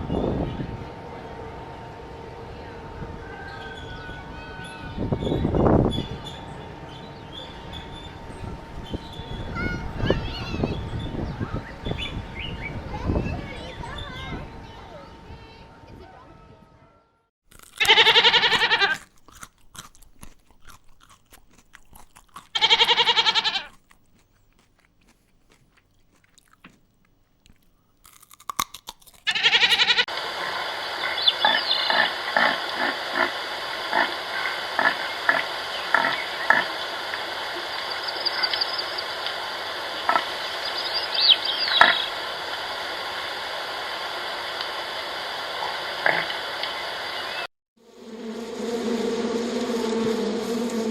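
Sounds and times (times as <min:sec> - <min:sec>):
pigs squealing: 0:17.6 - 0:19.1, 0:22.4 - 0:23.8, 0:29.2 - 0:30.1
pigs grunting: 0:31.4 - 0:34.2.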